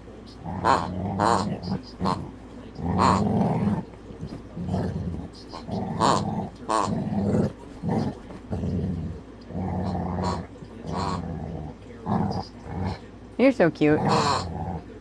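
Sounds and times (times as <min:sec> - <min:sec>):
dog growling softly: 0:00.0 - 0:15.0.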